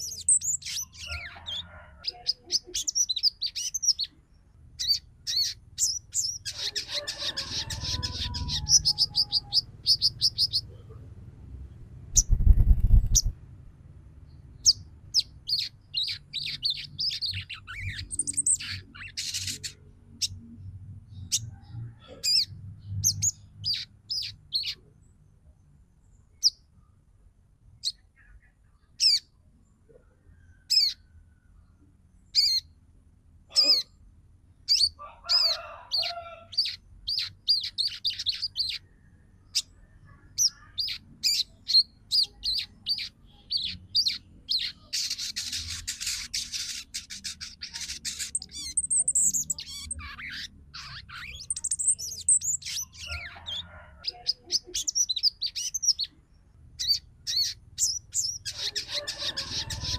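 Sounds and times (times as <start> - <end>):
rapid chattering bird trill: 4.8 - 11.0, 12.2 - 13.4, 14.6 - 20.4, 40.4 - 56.2, 56.8 - 59.9
bird calling with high chips: 14.7 - 19.9, 40.4 - 56.2, 56.8 - 59.9.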